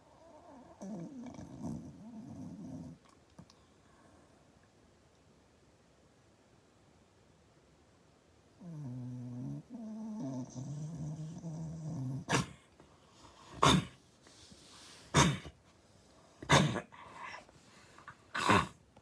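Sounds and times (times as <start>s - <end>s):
pet snoring: 0.2s - 3.0s, 8.6s - 12.6s, 18.4s - 18.8s
pet snorting: 13.4s - 14.0s, 14.8s - 15.6s, 16.4s - 17.4s, 18.3s - 18.8s.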